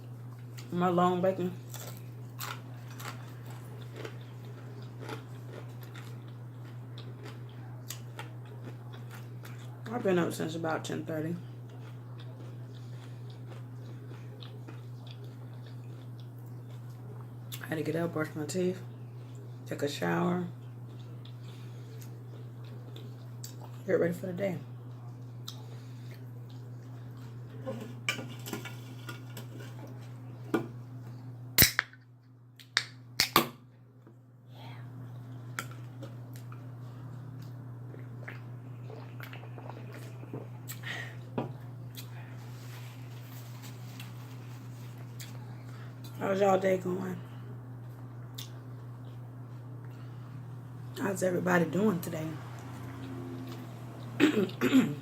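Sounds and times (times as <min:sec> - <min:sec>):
soft eating noises: 0:00.0 - 0:31.6, 0:33.9 - 0:55.0
low electrical hum: 0:00.0 - 0:55.0
chewing crunchy bacon: 0:01.6 - 0:10.0, 0:11.3 - 0:17.7, 0:18.9 - 0:19.7, 0:20.5 - 0:23.9, 0:24.7 - 0:31.2, 0:35.1 - 0:46.2, 0:47.8 - 0:51.0.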